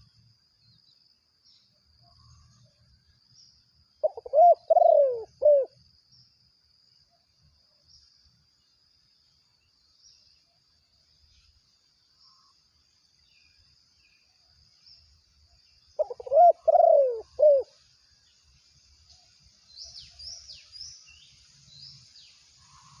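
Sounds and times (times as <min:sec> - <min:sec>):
pigeon cooing: 0:04.0 - 0:05.8, 0:16.0 - 0:17.7.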